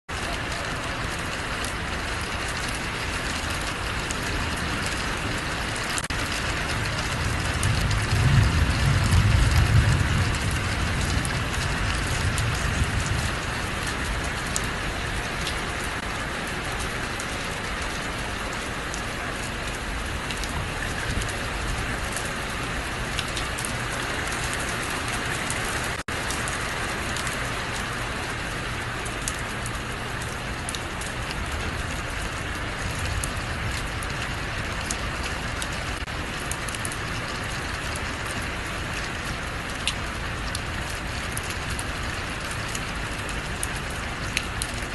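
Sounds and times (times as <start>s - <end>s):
rain pattering on surfaces: 0.1s - 44.9s
low rumble: 6.2s - 15.5s.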